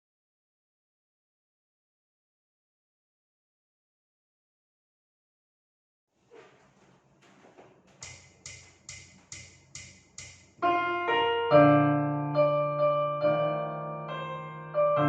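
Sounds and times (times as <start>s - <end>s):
piano chords: 10.2s - 15.0s.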